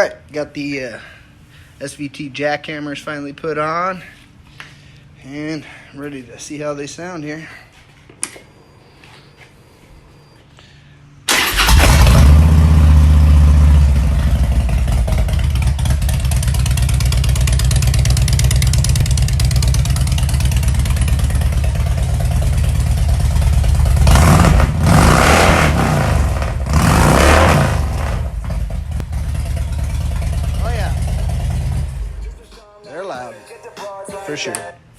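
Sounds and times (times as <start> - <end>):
motorcycle engine idling loudly: 12.1 - 32.2
motorcycle throttle blips: 12.7 - 32.3.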